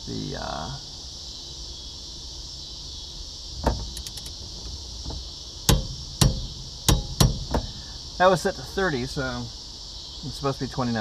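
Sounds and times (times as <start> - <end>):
crickets chirping: 0.0 - 11.0
torque wrench clicking: 3.6 - 4.4
knock: 5.1 - 7.7.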